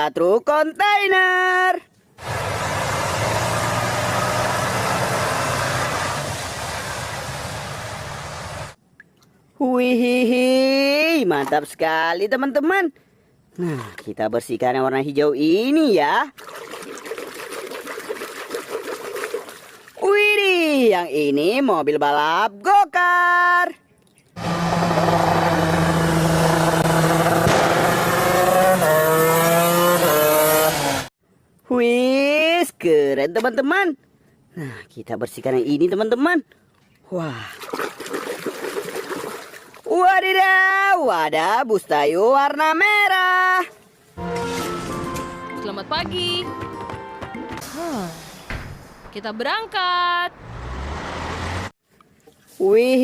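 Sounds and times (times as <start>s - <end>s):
go-kart engine revving: 2.2s - 8.8s, 24.4s - 31.1s, 50.3s - 51.7s
truck engine rumble: 2.2s - 8.8s, 44.2s - 51.8s.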